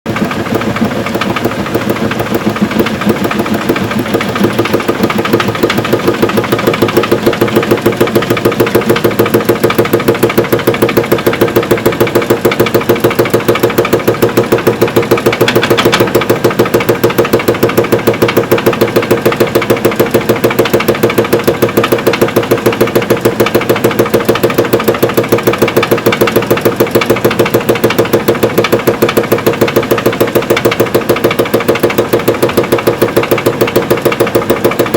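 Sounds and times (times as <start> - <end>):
washing machine drum knocking: 0.1 - 34.9.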